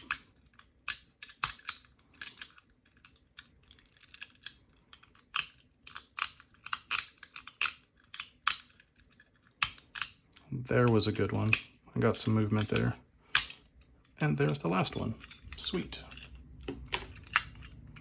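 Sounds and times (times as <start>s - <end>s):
lock pick clicking in padlock: 0.0s - 10.2s, 11.2s - 13.7s.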